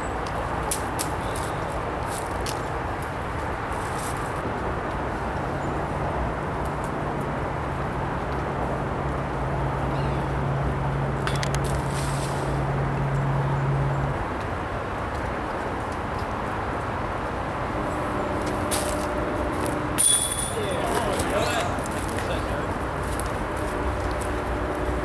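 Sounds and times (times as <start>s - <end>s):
low engine hum: 5.2s - 25.0s.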